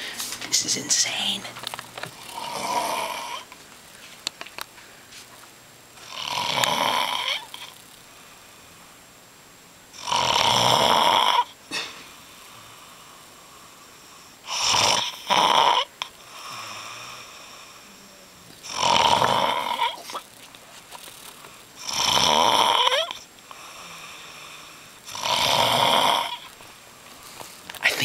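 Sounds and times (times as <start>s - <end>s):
man snoring loudly: 2.2s - 3.5s, 6.0s - 7.7s, 10.0s - 11.6s, 14.4s - 17.8s, 18.6s - 20.2s, 21.8s - 26.5s
quiet breaths: 7.6s - 9.1s, 11.6s - 15.3s, 16.0s - 20.2s, 23.2s - 28.0s.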